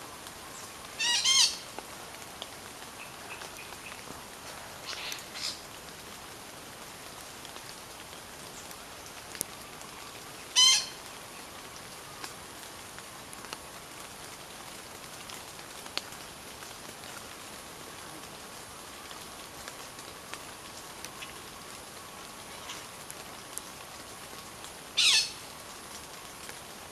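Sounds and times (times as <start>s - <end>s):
background hiss: 0.0s - 26.9s
bird calling: 1.0s - 1.6s, 25.0s - 25.4s.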